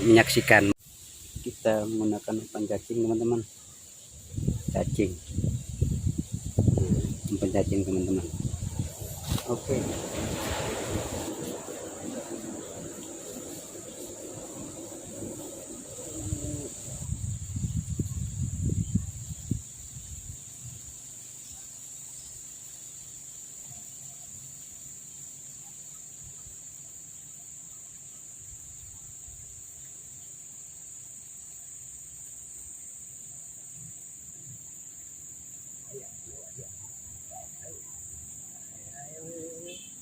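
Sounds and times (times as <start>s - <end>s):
high-pitched insect chorus: 0.0s - 40.0s.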